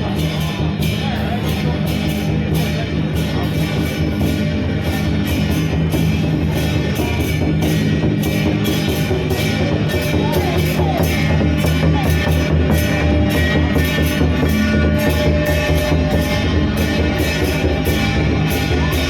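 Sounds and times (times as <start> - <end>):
steady drum beat: 0.0 - 19.0.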